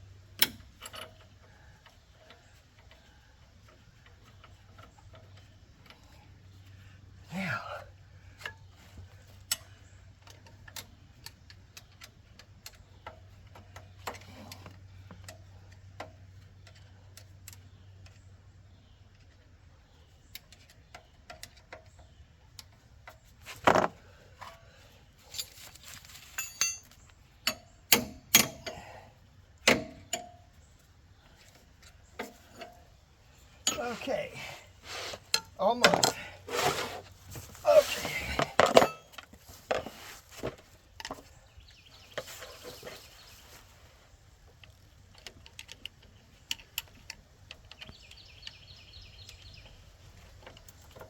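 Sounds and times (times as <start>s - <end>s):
hand tools clinking against metal: 25.2s - 29.0s, 33.5s - 40.1s.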